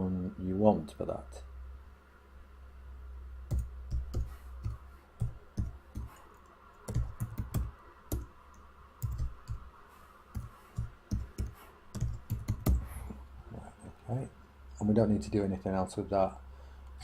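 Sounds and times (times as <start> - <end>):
keyboard typing: 3.5 - 9.7, 10.3 - 13.0.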